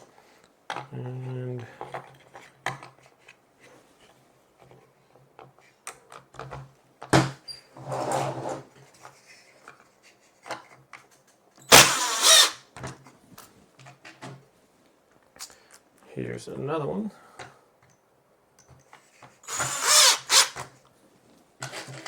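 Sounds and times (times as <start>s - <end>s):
power driver driving screw: 11.7s - 12.6s, 19.4s - 20.7s
screws and plastic parts clicking: 11.7s - 12.6s, 18.6s - 20.7s.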